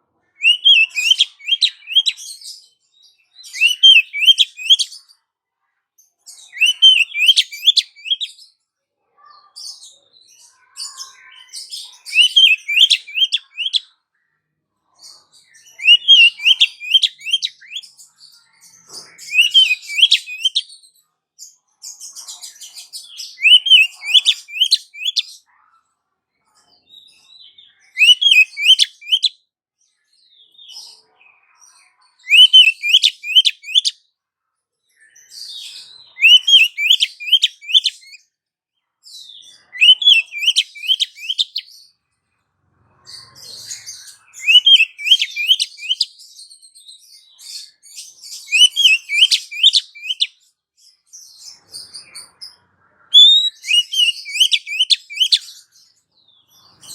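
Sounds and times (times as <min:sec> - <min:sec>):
magpie-robin chirping calls: 0:00.4 - 0:02.6, 0:03.4 - 0:05.0, 0:06.3 - 0:08.5, 0:10.4 - 0:13.9, 0:15.0 - 0:18.0, 0:18.6 - 0:20.8, 0:21.9 - 0:25.4, 0:27.8 - 0:29.3, 0:32.2 - 0:34.0, 0:35.1 - 0:38.2, 0:39.3 - 0:41.9, 0:43.1 - 0:46.5, 0:47.4 - 0:50.5, 0:51.2 - 0:55.8.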